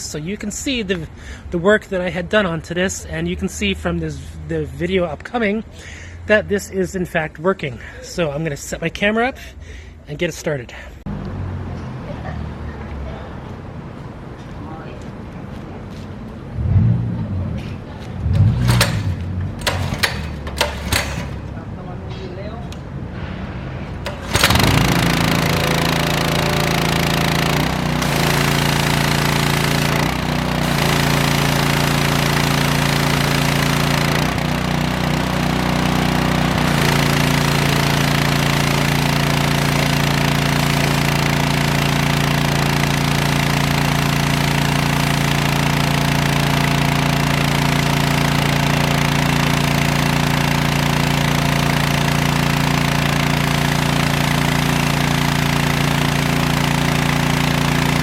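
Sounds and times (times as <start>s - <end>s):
small gas engine running: 16.6s - 21.7s, 23.2s - 58.0s.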